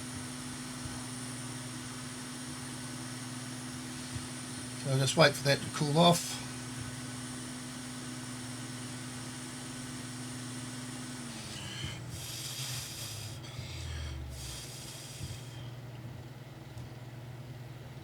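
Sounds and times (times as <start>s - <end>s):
workshop hum: 0.0s - 18.0s
motor winding down: 5.8s - 15.6s
hissing air bursts: 9.4s - 15.6s.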